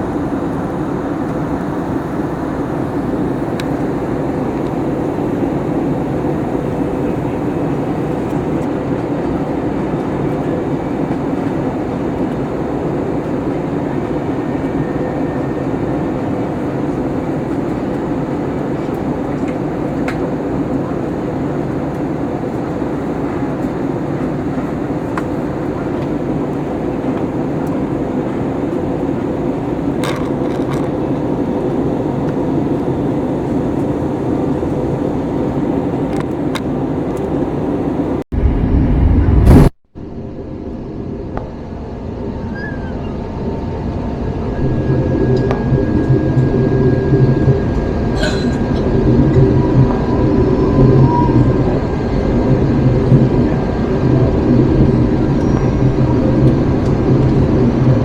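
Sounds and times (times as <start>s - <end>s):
airliner cabin noise: 0.0s - 58.0s
low rumble: 38.3s - 58.0s.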